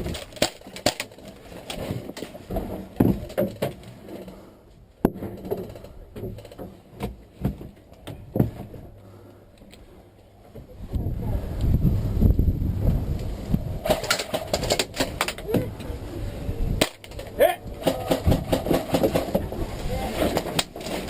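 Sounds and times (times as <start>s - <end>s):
sharp crack: 0.0s - 2.3s, 13.8s - 15.6s, 16.8s - 19.4s
knocks and thumps: 1.7s - 4.4s, 5.0s - 9.0s, 16.8s - 19.6s.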